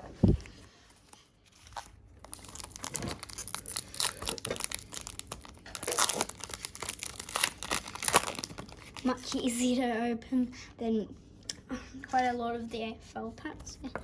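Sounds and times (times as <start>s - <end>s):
wrapper tearing and crinkling: 1.6s - 9.6s.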